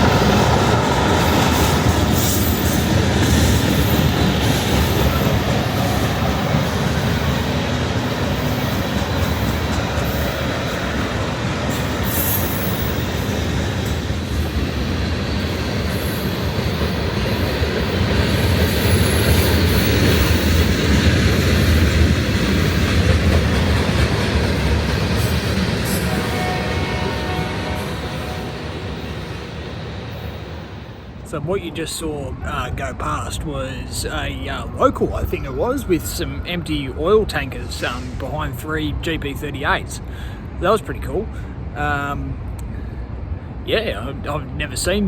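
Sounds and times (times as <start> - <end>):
high wheel squeals: 0.0 - 10.8, 11.7 - 13.5
freight train rumbling past: 0.0 - 45.0.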